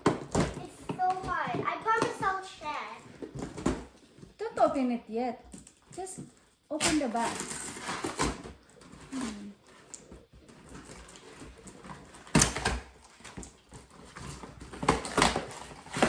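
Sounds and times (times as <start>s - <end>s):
cardboard box tearing open: 6.7s - 10.0s, 10.6s - 16.0s.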